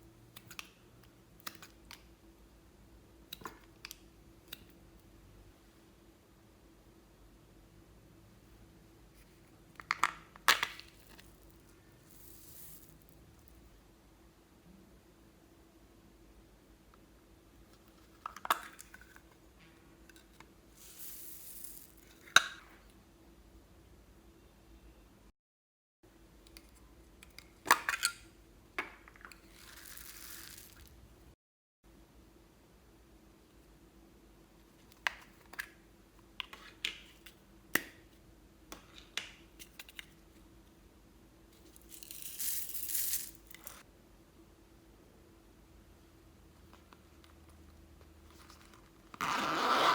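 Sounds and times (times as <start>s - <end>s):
small hard objects clicking: 29.3s - 31.0s.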